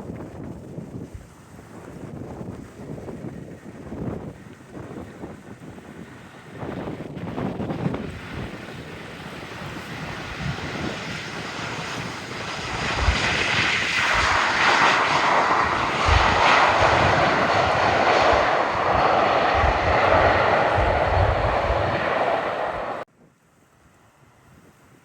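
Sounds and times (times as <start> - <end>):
airliner engines rushing: 5.0 - 23.1.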